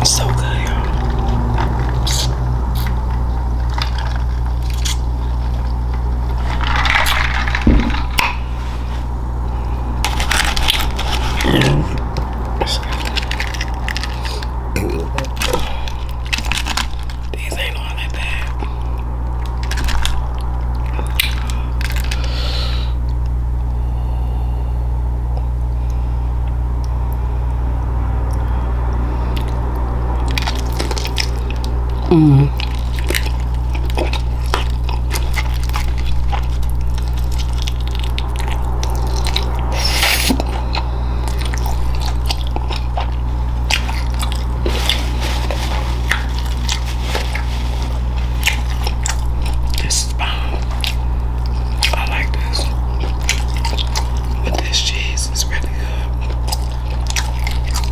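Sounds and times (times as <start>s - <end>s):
chewing and biting food: 0.0s - 22.3s, 25.3s - 57.9s
steady low hum: 0.0s - 57.9s
crunchy bite: 30.2s - 57.9s.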